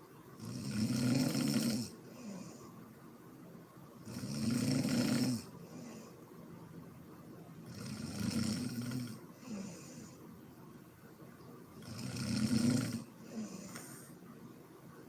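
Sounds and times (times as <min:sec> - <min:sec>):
woman snoring: 0:00.4 - 0:02.6, 0:04.0 - 0:06.1, 0:07.6 - 0:10.2, 0:11.8 - 0:14.1
breathy hiss: 0:00.4 - 0:02.8, 0:04.0 - 0:06.3, 0:07.7 - 0:10.4, 0:11.8 - 0:14.3.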